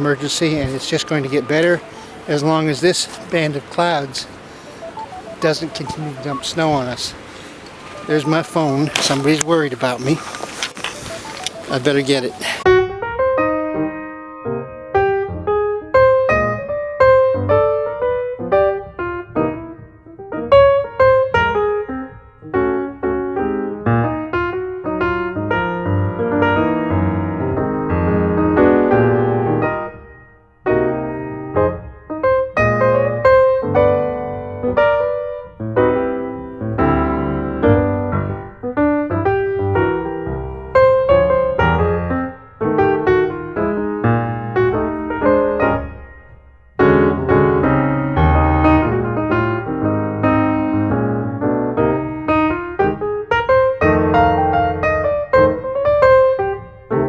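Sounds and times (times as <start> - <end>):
piano melody with chords: 0.0 - 57.0.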